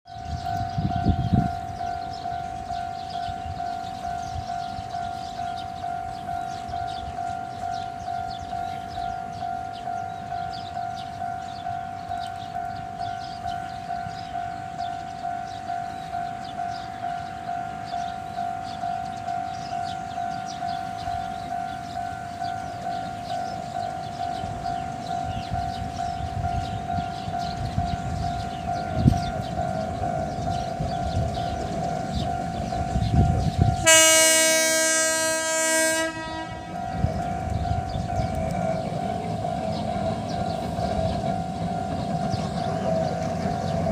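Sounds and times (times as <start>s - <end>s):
level-crossing warning bell: 0.1s - 43.9s.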